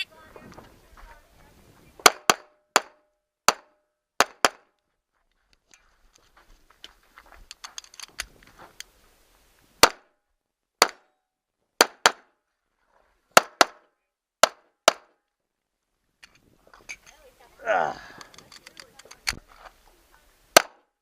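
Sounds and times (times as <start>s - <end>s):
small clicks and knocks: 18.2s - 19.5s.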